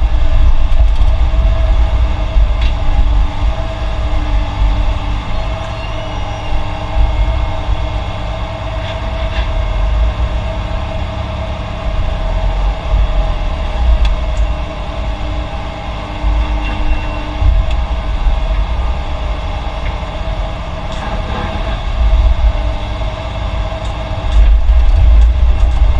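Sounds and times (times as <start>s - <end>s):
diesel engine rumble: 0.0s - 25.9s
machine whine: 0.0s - 25.9s.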